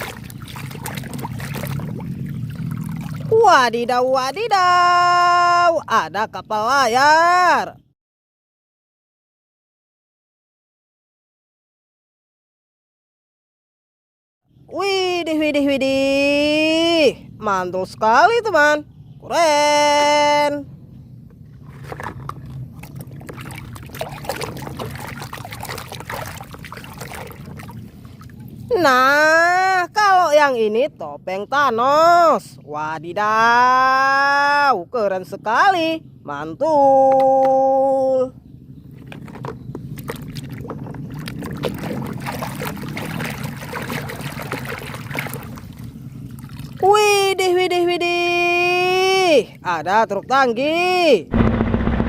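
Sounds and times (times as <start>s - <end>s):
water splashing and trickling: 0.0s - 7.0s, 21.4s - 30.2s, 38.8s - 47.5s
low steady hum: 0.0s - 7.9s, 14.5s - 33.4s, 34.8s - 52.0s.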